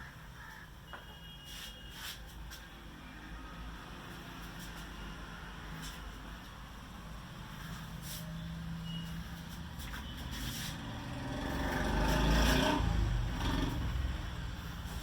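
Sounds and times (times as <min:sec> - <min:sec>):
motor vehicle passing by: 0:07.2 - 0:15.0.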